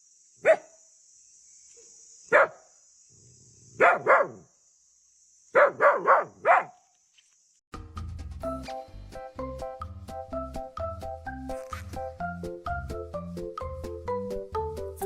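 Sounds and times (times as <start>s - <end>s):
dog barking: 0.4s - 0.8s, 2.3s - 2.6s, 3.8s - 4.4s, 5.5s - 6.8s
music: 7.7s - 15.0s.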